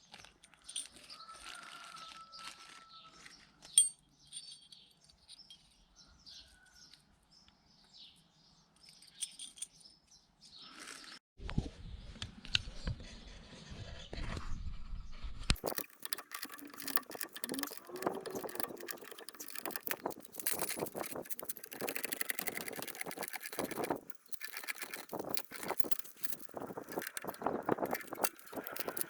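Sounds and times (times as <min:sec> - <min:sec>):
hand tools clinking on metal: 0:15.6 - 0:29.0.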